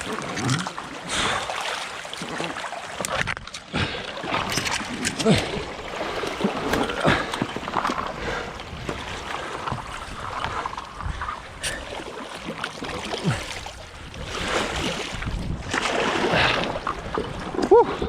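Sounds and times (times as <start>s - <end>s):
floodwater splashing and sloshing: 0.0s - 18.0s.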